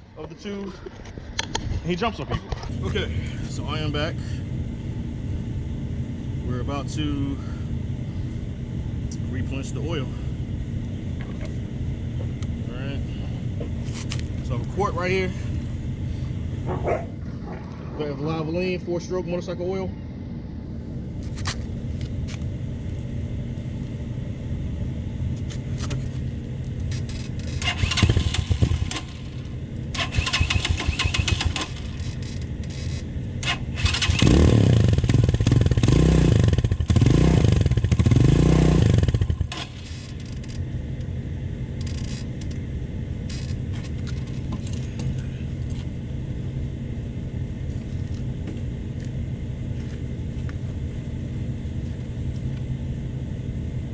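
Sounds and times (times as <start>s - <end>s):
motorcycle engine idling and revving: 24.0s - 46.4s.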